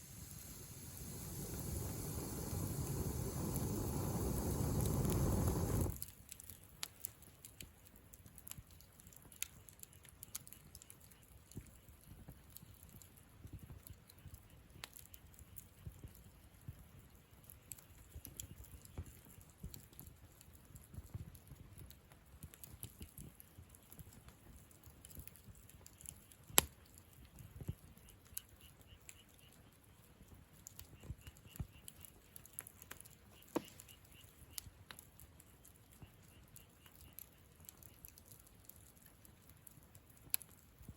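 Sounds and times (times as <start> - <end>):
campfire crackling: 0.0 - 40.9
loud fire pop: 0.4 - 6.0.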